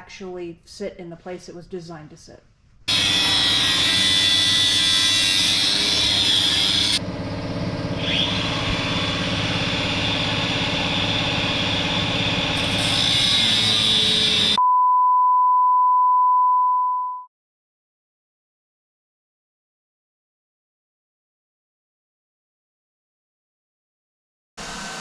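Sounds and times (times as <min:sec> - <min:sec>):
shop machinery humming: 0:02.9 - 0:14.6
pure beep tone: 0:14.6 - 0:17.3.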